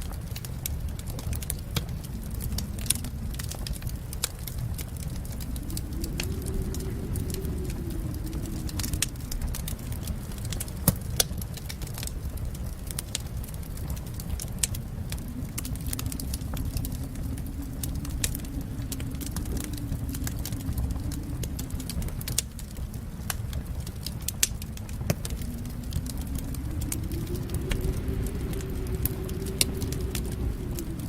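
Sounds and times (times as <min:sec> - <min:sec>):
low rumble of flames: 0:00.0 - 0:31.0
wood fire crackling: 0:00.0 - 0:31.0.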